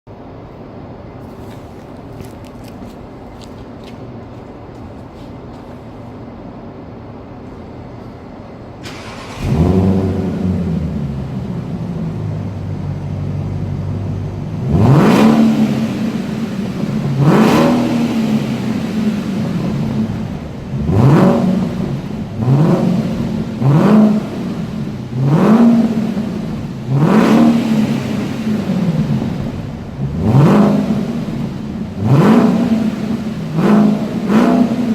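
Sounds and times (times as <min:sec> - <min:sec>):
car engine starting and idling: 0:00.1 - 0:34.9
car engine revving: 0:08.8 - 0:34.9.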